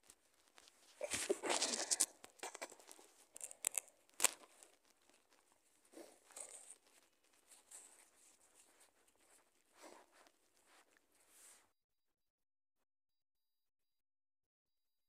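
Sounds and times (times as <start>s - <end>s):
small rustles and clicks: 0.0s - 11.7s.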